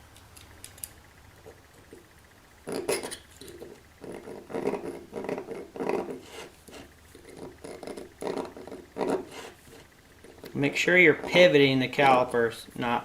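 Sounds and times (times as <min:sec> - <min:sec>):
caliper scraping metal: 0:02.7 - 0:12.4.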